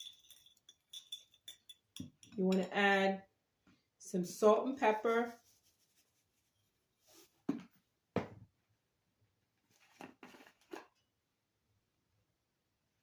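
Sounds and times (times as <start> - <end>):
salt and pepper knocks and rattles: 0.0 - 2.4
quick stirring strokes: 5.1 - 7.3.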